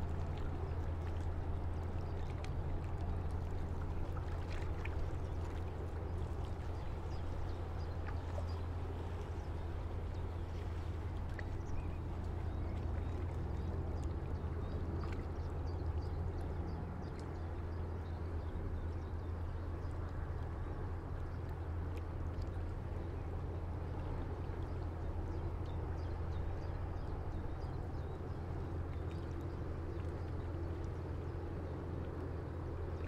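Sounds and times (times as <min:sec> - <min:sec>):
river water lapping against stone: 0:00.0 - 0:15.6.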